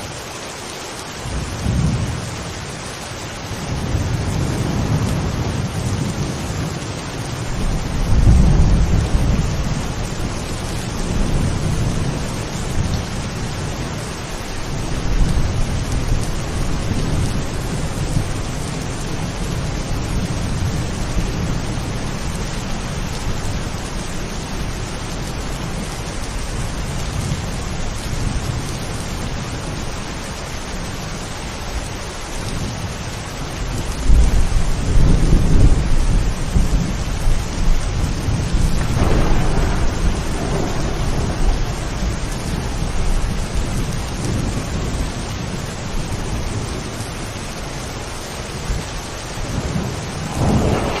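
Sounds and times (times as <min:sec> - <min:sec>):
steady rain: 0:00.0 - 0:51.0
thunder rumbling: 0:03.4 - 0:30.4, 0:33.7 - 0:48.0, 0:48.6 - 0:51.0.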